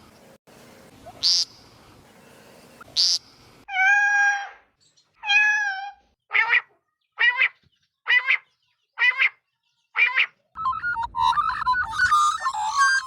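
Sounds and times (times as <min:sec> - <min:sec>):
bird calling: 0:10.0 - 0:13.0.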